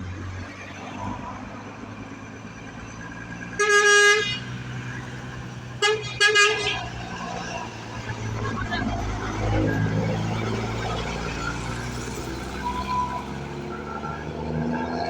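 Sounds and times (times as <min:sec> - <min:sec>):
diesel truck engine running: 0:01.2 - 0:15.0
truck horn blasts: 0:03.6 - 0:04.7, 0:05.8 - 0:07.2.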